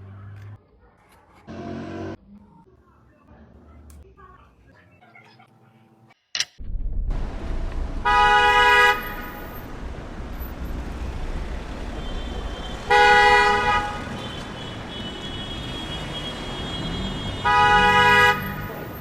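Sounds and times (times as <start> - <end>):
steady low rumble: 6.6 - 8.4
vehicle horn honking: 8.0 - 9.4, 12.0 - 18.9.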